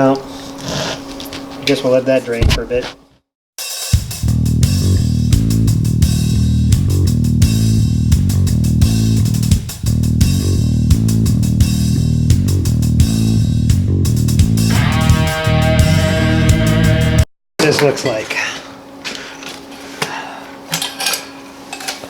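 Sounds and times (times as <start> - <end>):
rock music: 4.0 - 17.3.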